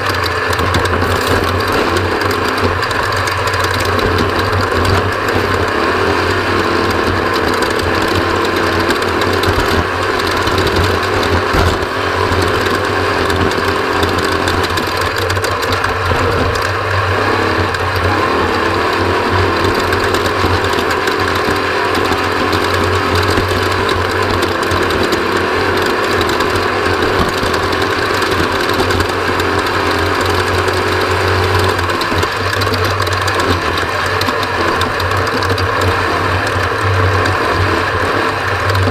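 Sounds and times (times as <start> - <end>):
mechanical rattling: 0.0 - 37.6
race vehicle engine running: 0.0 - 38.9.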